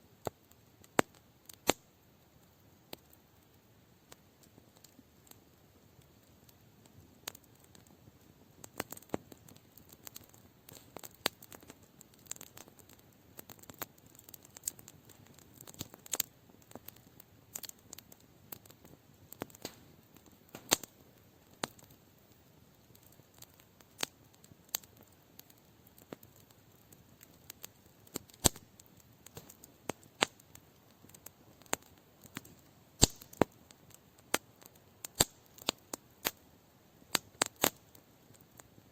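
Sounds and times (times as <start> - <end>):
campfire crackling and popping: 0.0 - 38.9.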